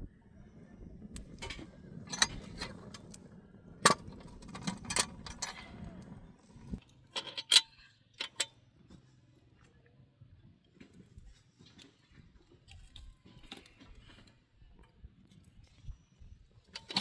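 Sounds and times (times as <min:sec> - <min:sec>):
objects clicking and knocking: 0:01.2 - 0:08.6.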